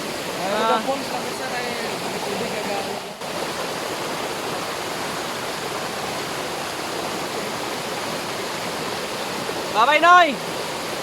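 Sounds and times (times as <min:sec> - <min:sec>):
water rushing over a waterfall: 0:00.0 - 0:11.0.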